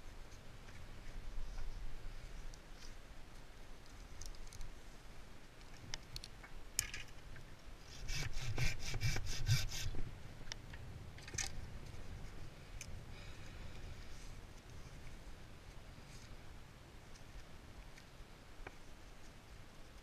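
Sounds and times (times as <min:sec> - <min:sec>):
rasping strokes on wood: 0:07.9 - 0:10.0.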